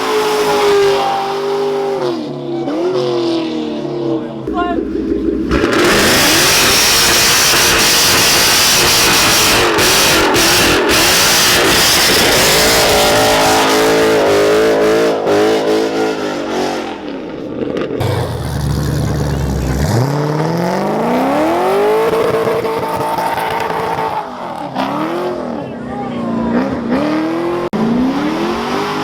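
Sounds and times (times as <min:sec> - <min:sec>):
tyre and exhaust noise: 0:04.4 - 0:29.0
car engine revving hard: 0:04.9 - 0:17.2, 0:17.8 - 0:25.7, 0:26.5 - 0:29.0.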